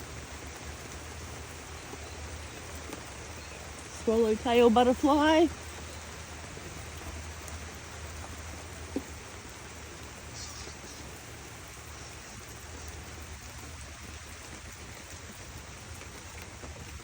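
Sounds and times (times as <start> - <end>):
light rain on foliage: 0.0 - 17.0
faint high chirp: 10.3 - 11.2.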